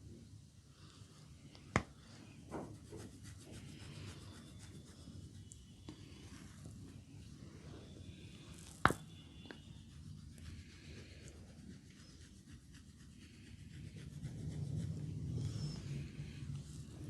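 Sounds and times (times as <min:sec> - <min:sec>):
hands rubbing a head: 0:01.8 - 0:07.0.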